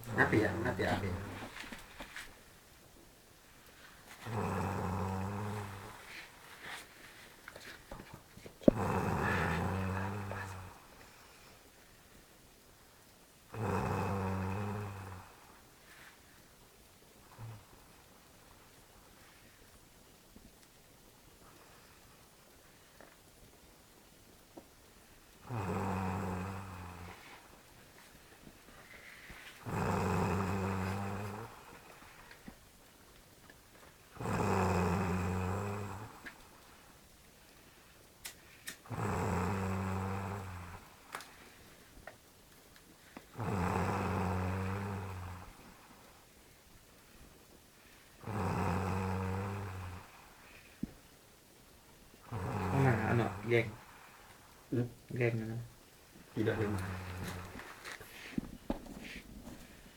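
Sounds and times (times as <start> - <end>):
man snoring loudly: 4.3 - 5.9, 8.7 - 10.8, 13.5 - 15.3, 25.4 - 27.2, 29.6 - 31.6, 34.2 - 36.2, 38.9 - 40.8, 43.4 - 45.6, 48.2 - 50.2, 52.3 - 53.9, 56.4 - 57.6.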